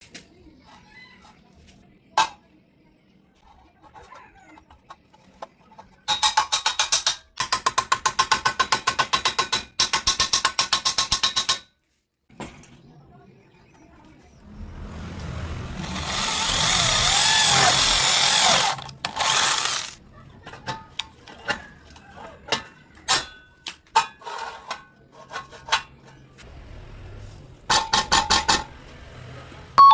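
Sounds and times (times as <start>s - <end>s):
power tool running: 14.6s - 20.0s.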